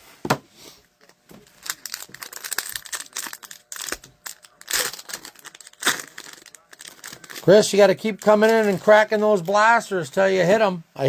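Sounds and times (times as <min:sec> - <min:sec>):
cards rustling: 0:00.9 - 0:09.8
card pack wrapper crinkling and tearing: 0:01.4 - 0:09.2.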